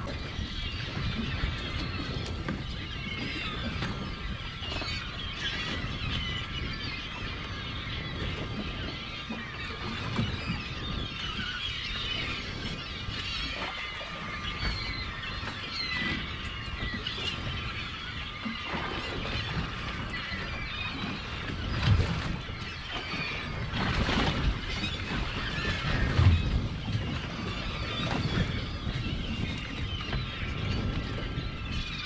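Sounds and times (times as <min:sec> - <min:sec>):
gulls calling: 0:00.0 - 0:32.0
water against a boat: 0:00.0 - 0:32.0
wind: 0:00.0 - 0:32.0.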